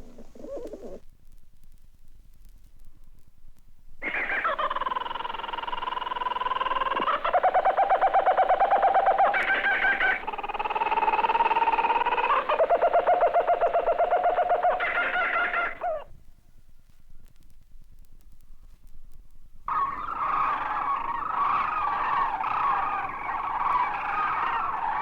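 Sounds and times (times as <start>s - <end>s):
cockatoo caws and trills: 0.0s - 1.0s, 4.0s - 16.2s, 19.7s - 25.0s.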